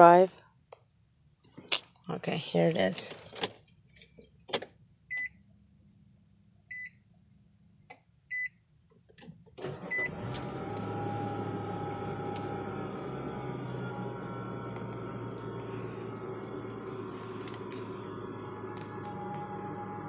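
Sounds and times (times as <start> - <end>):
car engine running with whine: 9.6 - 20.0
dashboard warning chime beeps: 9.9 - 10.2
clicks: 14.7 - 15.6.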